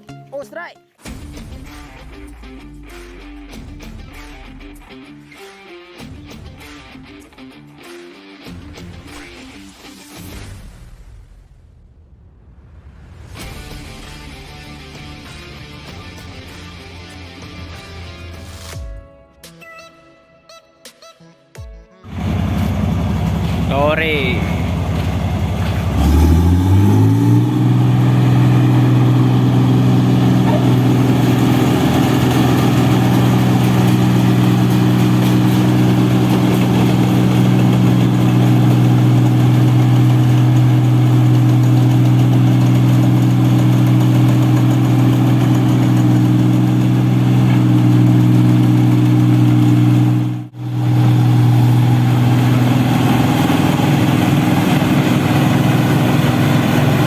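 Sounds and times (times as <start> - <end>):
engine revving and running: 22.1 - 57.0.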